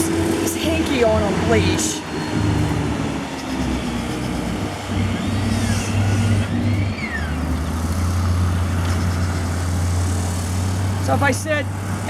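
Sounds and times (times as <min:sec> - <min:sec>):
vehicle engine running: 0:00.0 - 0:12.0.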